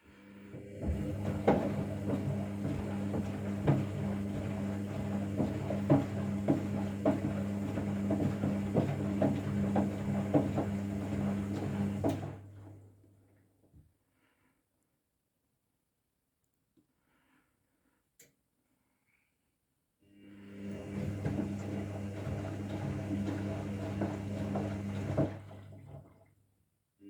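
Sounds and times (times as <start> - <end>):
washing machine motor hum: 0.3 - 12.9, 20.2 - 26.3.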